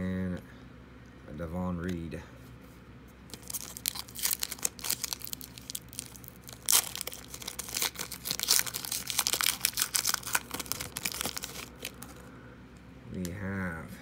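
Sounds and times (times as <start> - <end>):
foil wrapper crinkling and tearing: 3.3 - 12.3.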